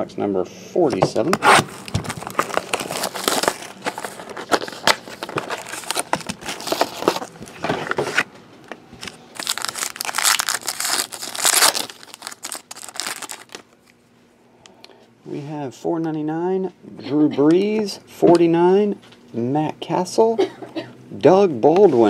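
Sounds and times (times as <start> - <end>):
plastic wrapping tearing and crinkling: 1.4 - 8.3, 9.0 - 13.7.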